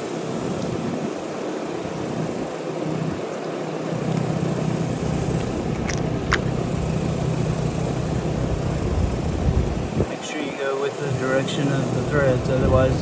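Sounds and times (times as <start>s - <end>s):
low mechanical rumble: 3.8s - 13.0s
light clicks: 5.4s - 6.6s.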